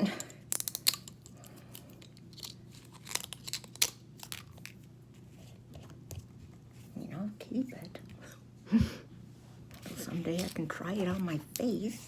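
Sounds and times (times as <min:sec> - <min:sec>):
plastic seal crinkling: 0:02.1 - 0:04.8.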